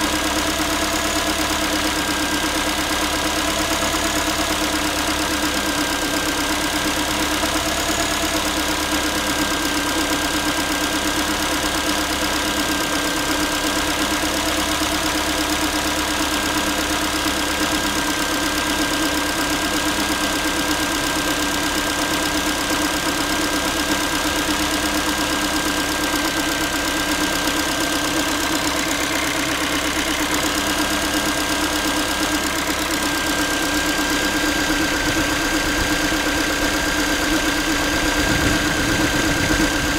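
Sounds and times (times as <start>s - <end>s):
car engine idling: 0.0s - 39.9s
fast even engine ticking: 12.8s - 39.9s.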